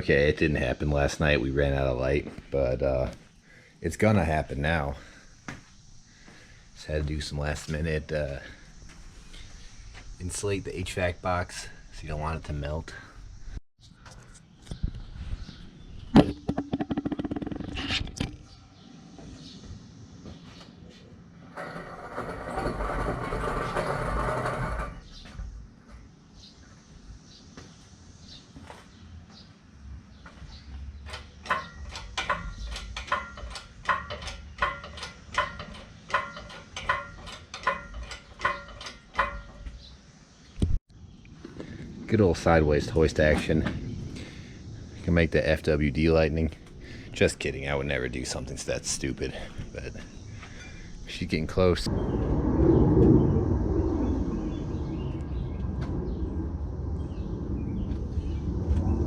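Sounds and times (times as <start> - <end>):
engine hoist pump clanking: 31.1 - 39.8
low outdoor rumble: 41.0 - 59.0.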